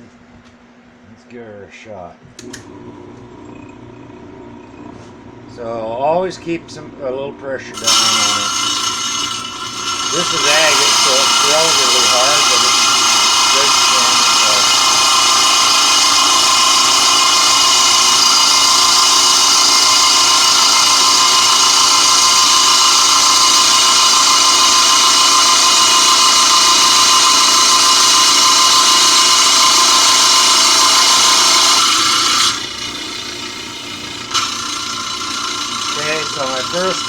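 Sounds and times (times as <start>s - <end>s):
saw blade grinding through stone: 7.8s - 37.0s.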